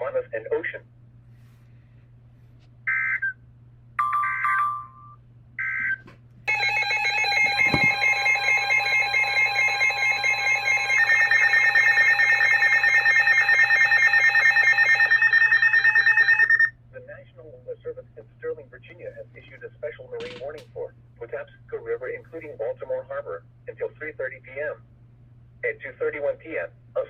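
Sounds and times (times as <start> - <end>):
pulsing multi-tone alarm: 6.5 - 16.7.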